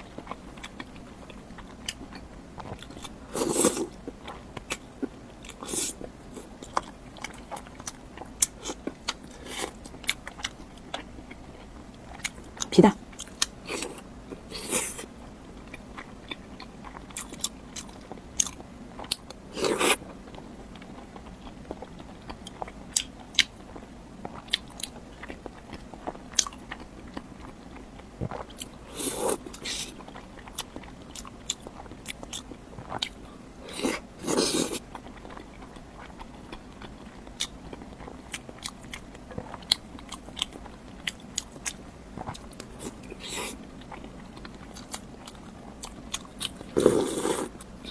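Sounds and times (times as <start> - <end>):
biting and chewing: 28.2 - 47.9.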